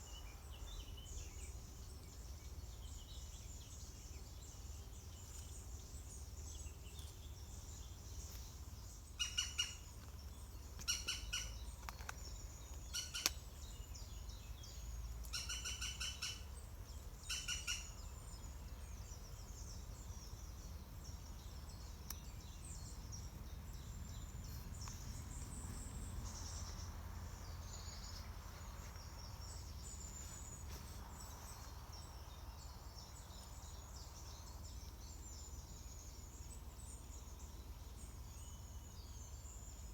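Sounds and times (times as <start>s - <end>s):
woodpecker ticking calls: 8.8s - 18.4s.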